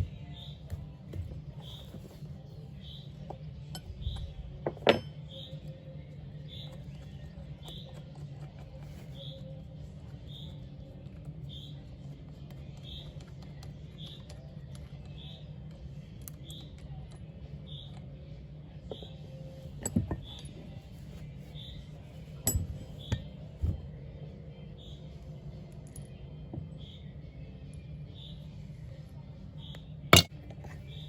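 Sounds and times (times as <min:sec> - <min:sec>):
faint high chirp: 0:00.0 - 0:08.2, 0:08.8 - 0:15.6, 0:24.5 - 0:25.4, 0:26.0 - 0:31.0
steady low hum: 0:00.0 - 0:31.0
metal knocks and clinks: 0:04.7 - 0:05.5, 0:22.4 - 0:23.3.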